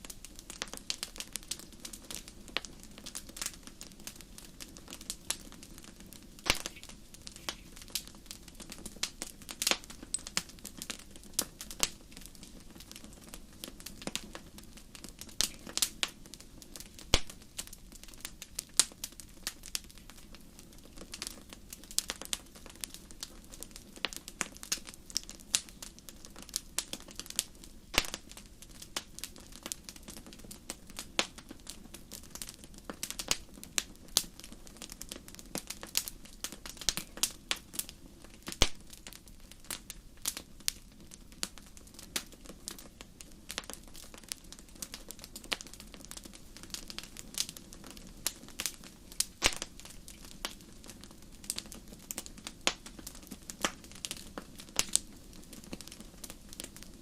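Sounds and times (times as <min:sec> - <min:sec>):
wood fire crackling and popping: 0:00.0 - 0:57.0.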